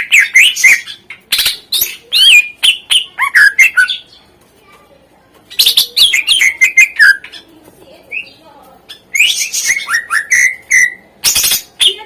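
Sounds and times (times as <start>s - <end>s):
bird singing sharp chips and whistles: 9.0s - 12.0s.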